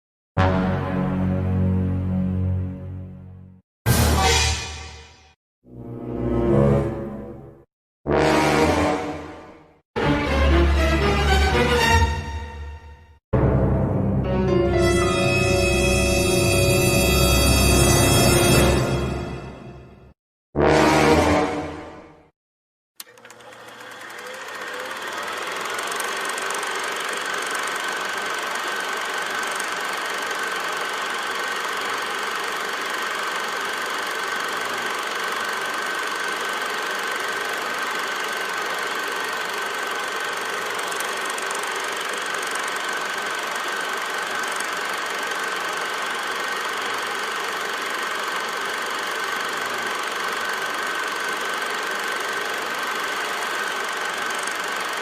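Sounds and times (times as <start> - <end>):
engine-like mechanical running: 23.0 - 55.0.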